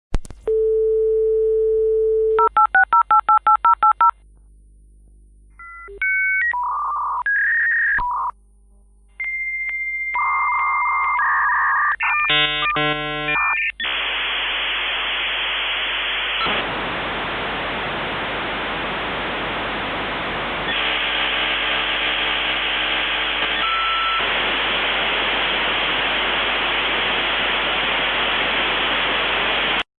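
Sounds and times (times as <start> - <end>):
dial tone: 0.5 - 4.1, 9.2 - 13.7, 23.6 - 24.2
steady hiss of data noise: 12.8 - 29.8
modem whistles and handshake tones: 23.4 - 24.2.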